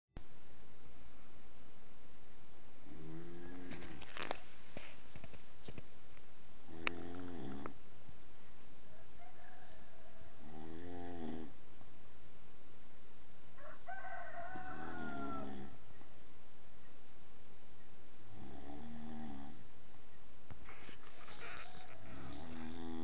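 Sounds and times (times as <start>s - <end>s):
person snoring loudly: 21.3s - 23.0s.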